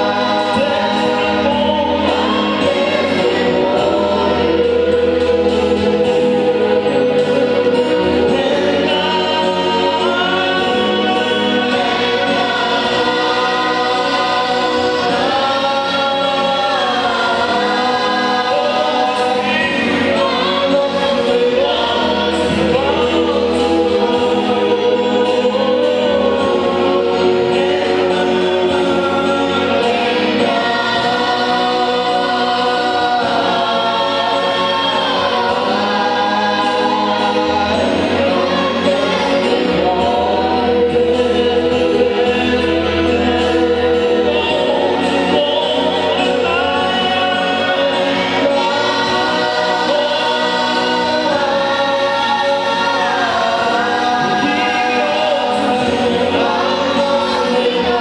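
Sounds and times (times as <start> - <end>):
choir singing gospel song: 0.0 - 58.0
instrumental backing with bass: 0.0 - 58.0.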